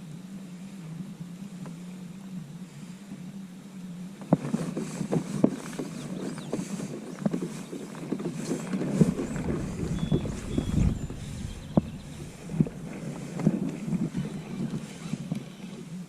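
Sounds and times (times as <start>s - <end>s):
wind buffeting microphone: 7.7s - 16.0s
water knocking against kayak hull: 8.9s - 14.6s.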